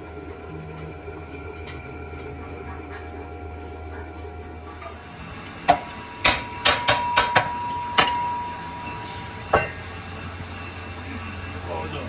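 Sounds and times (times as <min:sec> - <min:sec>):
metallic ring: 0:02.9 - 0:11.7
hammer striking steel: 0:04.7 - 0:10.0.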